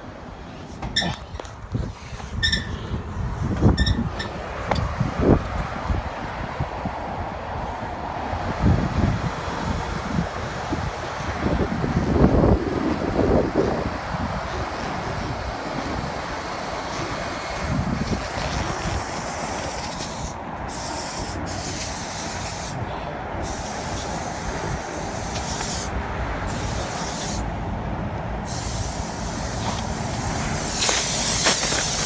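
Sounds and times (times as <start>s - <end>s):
hiss of blowing air: 16.9s - 22.8s, 23.4s - 27.5s, 28.4s - 32.0s.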